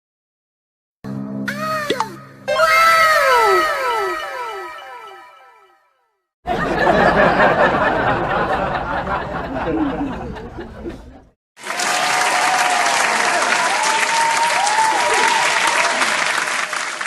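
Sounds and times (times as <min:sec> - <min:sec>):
crowd cheering and whoops: 0:11.6 - 0:16.8
crowd applause: 0:11.6 - 0:17.0.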